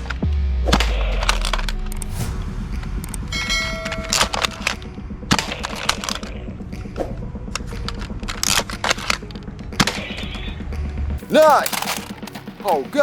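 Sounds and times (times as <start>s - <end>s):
plastic toy guns clicking: 11.2s - 13.0s.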